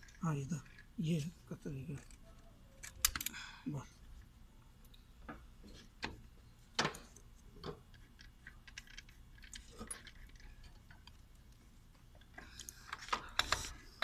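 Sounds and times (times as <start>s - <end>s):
metal parts clicking and tapping: 2.8s - 3.4s, 5.2s - 14.0s.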